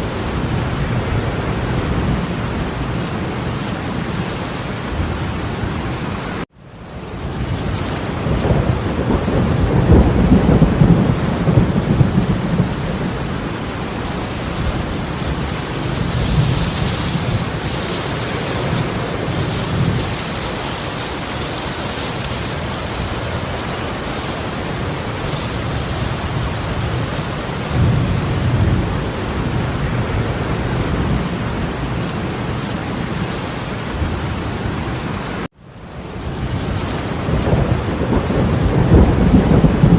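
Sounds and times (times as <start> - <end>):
torrential rain pouring: 0.0 - 39.9
deep thunder rumbles: 7.1 - 34.8, 36.2 - 39.9.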